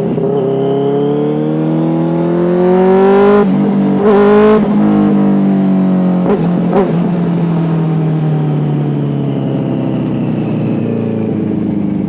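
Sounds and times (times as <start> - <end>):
motorcycle engine revving: 0.0 - 9.1.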